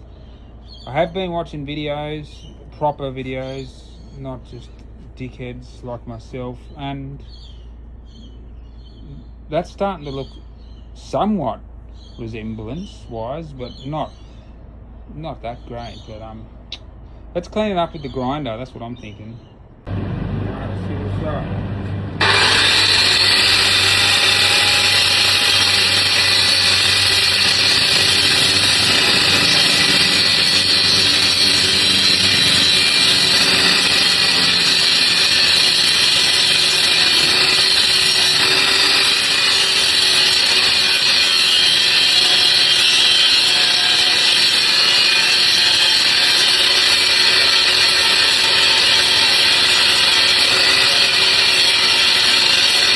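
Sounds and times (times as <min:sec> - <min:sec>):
angle grinder grinding steel: 0:19.9 - 0:52.9.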